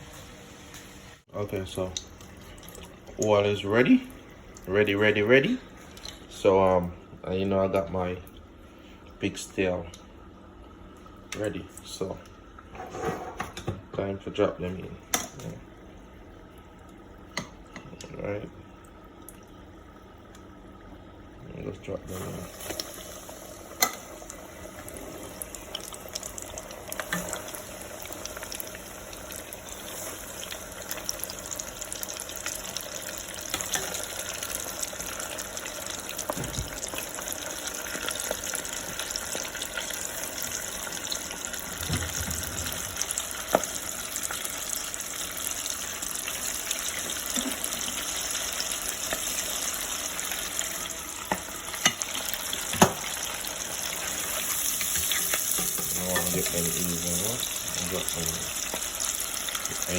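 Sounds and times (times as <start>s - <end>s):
deep-frying in hot oil: 0.0s - 8.2s, 21.4s - 59.9s
oil popping and crackling: 22.5s - 59.9s.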